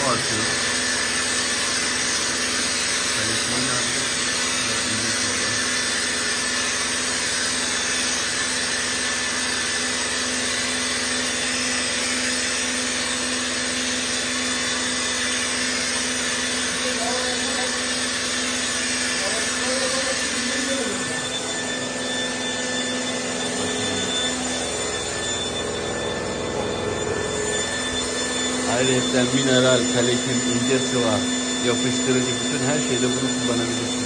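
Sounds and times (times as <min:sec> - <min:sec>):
motor hum: 0:00.0 - 0:34.0.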